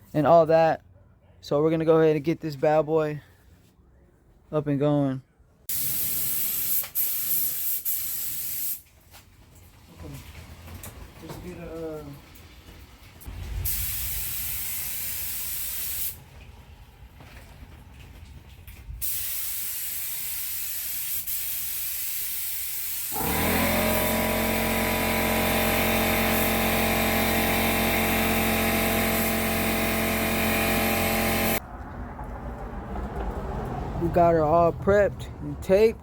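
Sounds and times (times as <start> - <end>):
compressed air hissing: 5.7 - 8.8, 13.6 - 16.2, 19.0 - 31.6
motor humming: 23.2 - 31.6.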